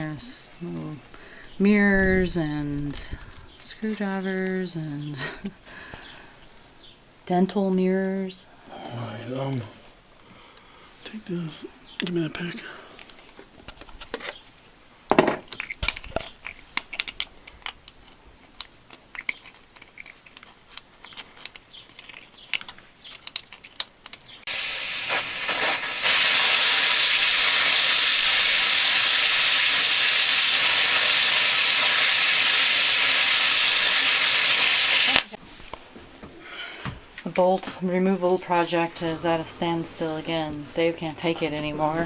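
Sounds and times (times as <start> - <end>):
gas cutting torch hissing: 24.5 - 35.4.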